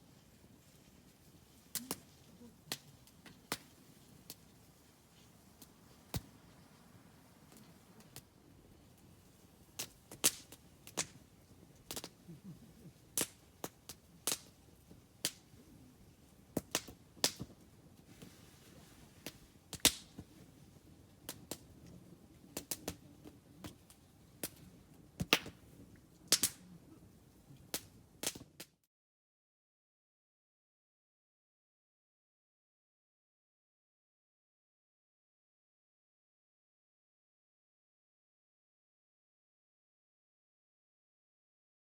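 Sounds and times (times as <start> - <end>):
campfire crackling and popping: 0.2 - 28.8.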